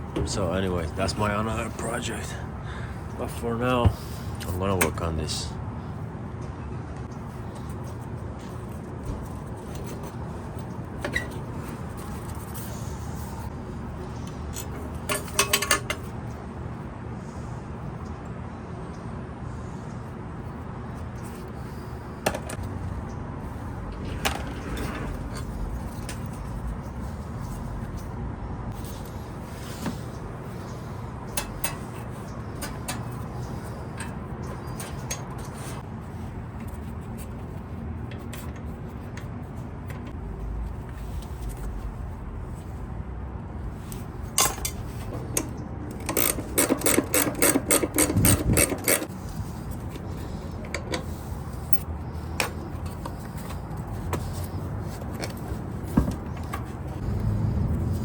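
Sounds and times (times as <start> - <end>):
hand tools clicking on metal: 44.4 - 49.1.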